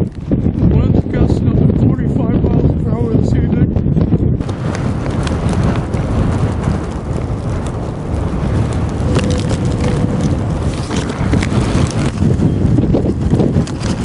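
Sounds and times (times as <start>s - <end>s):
wind buffeting microphone: 0.0s - 14.0s
snow ticking against camera: 4.4s - 14.0s.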